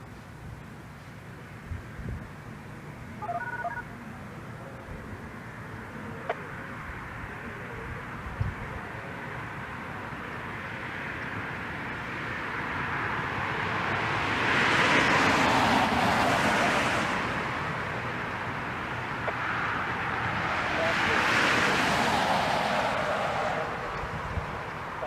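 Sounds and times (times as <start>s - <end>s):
cars passing: 0.0s - 25.0s.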